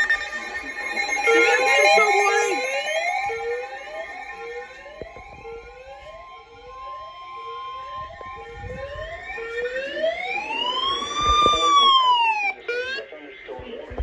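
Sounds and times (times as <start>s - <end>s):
steady alert tone: 0.0s - 5.6s
electronic siren wailing: 0.0s - 13.2s.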